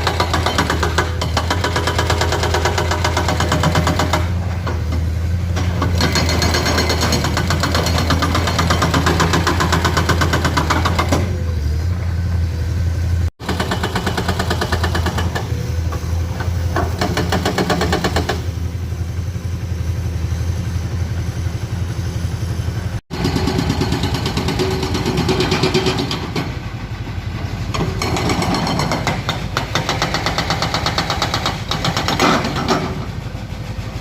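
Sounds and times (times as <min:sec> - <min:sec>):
diesel engine humming: 0:07.2 - 0:13.3, 0:14.5 - 0:34.0.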